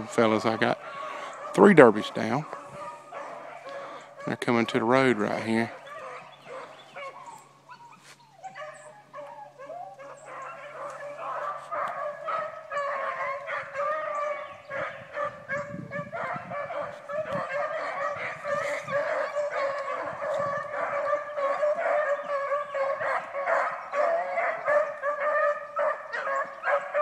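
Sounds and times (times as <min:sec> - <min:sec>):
beagles baying: 0:00.0 - 0:27.0.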